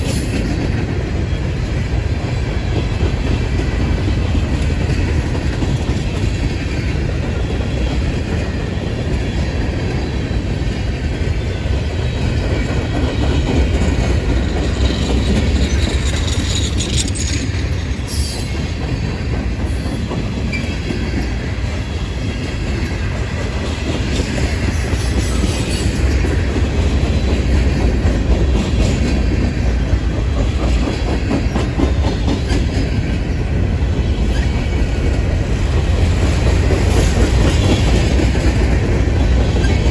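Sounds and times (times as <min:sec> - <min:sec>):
train rumbling past: 0:00.0 - 0:39.9
wheels clicking over rail joints: 0:00.0 - 0:39.9
high-pitched wheel squeals: 0:14.8 - 0:18.7.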